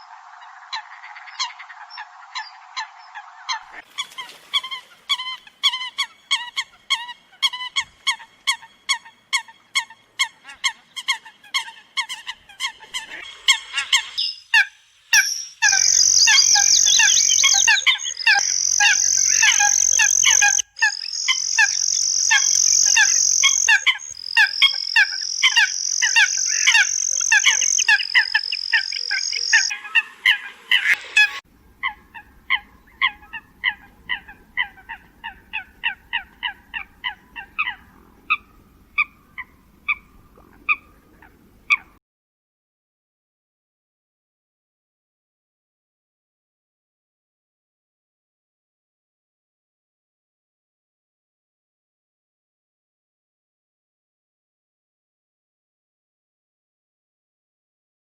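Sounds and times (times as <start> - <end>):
coots honking calls: 4.2 - 41.0
high-pitched buzz: 21.2 - 31.4.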